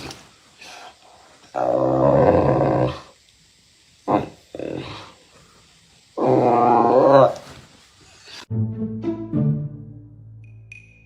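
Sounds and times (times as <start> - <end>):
low sustained music notes: 8.5 - 11.0
high ringing ping: 10.4 - 11.0.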